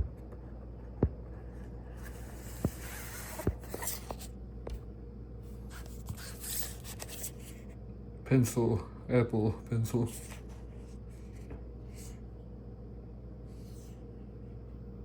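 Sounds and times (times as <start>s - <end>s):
cardboard scraping and rustling: 1.4s - 4.3s.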